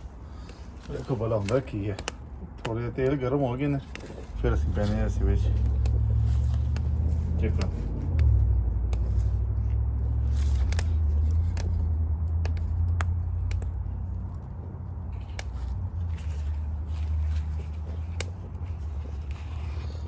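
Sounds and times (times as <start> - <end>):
steady low rumble: 4.2 - 20.0.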